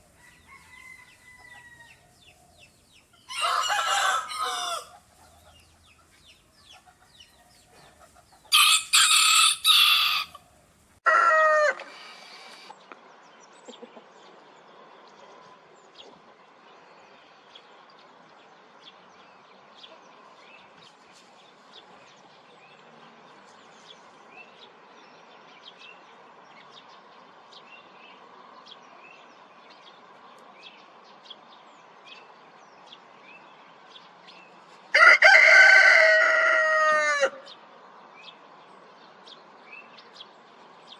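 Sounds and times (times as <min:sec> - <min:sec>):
rooster crowing: 0:00.2 - 0:02.3, 0:03.3 - 0:05.0, 0:08.5 - 0:10.4, 0:11.0 - 0:12.6, 0:34.9 - 0:37.5.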